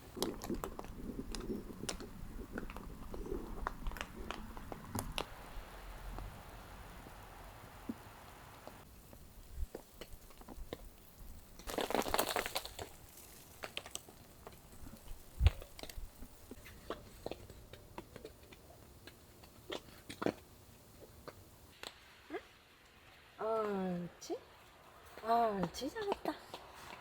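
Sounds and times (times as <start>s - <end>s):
irregular crunches: 0.0s - 5.4s, 9.6s - 21.4s.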